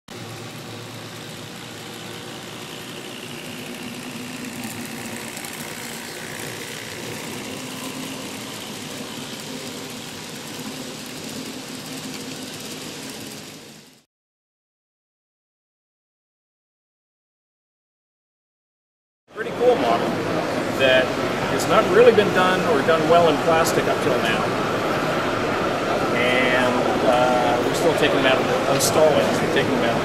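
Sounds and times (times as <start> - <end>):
engine idling: 0.1 - 14.0.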